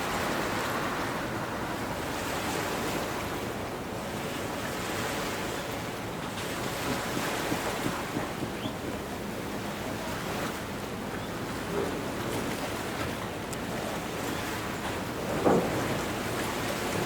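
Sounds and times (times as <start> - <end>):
water washing against quay: 0.0 - 17.0
wind on microphone: 6.3 - 10.8.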